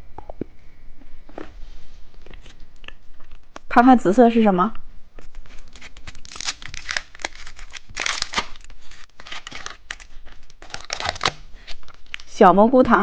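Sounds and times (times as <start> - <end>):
plastic wrapper crinkling: 5.2 - 12.4.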